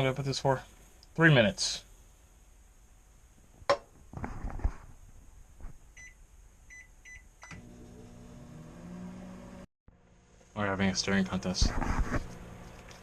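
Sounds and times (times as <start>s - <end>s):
microwave oven humming: 7.4s - 10.4s.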